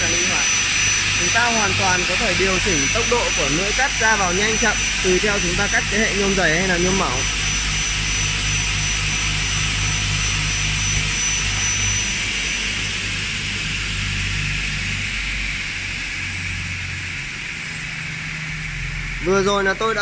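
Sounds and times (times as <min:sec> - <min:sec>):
cutting saw hum and whir: 0:00.0 - 0:20.0.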